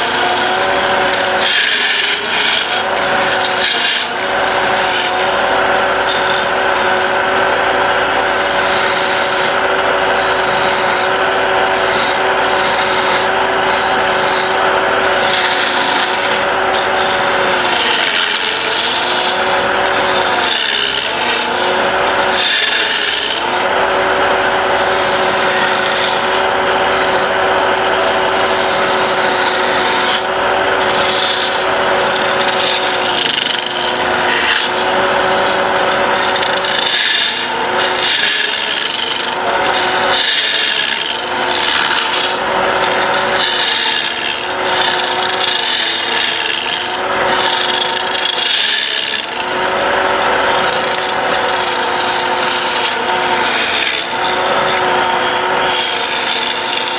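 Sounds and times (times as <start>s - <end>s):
tool scraping spinning wood: 0.0s - 56.9s
wood lathe hum: 0.0s - 56.9s.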